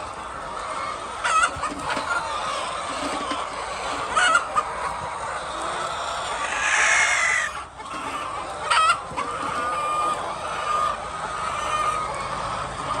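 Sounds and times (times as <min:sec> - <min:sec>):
hens clucking: 0:00.0 - 0:13.0
hen squawk: 0:05.6 - 0:12.3.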